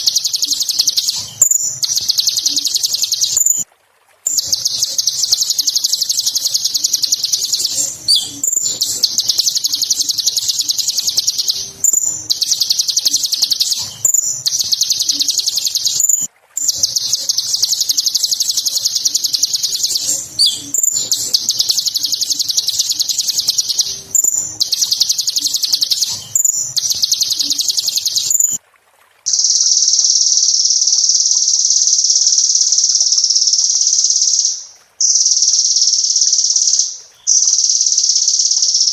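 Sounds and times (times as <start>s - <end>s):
bird chattering trill: 0.0s - 3.6s, 4.3s - 28.6s.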